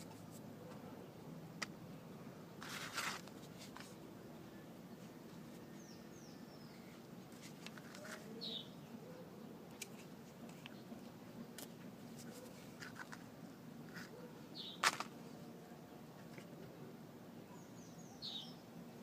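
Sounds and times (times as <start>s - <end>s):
faint low background noise: 0.0s - 19.0s
bird chirping: 4.4s - 7.1s, 8.3s - 9.5s, 14.2s - 14.8s, 17.5s - 18.7s
rustle or knock: 14.8s - 15.2s.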